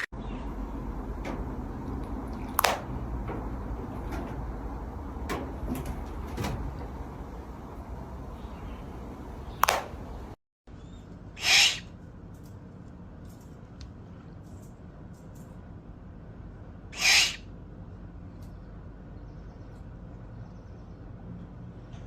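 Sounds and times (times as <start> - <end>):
steady low hum: 0.0 - 10.4
owl calling: 7.4 - 10.4, 11.4 - 11.9, 17.0 - 17.5.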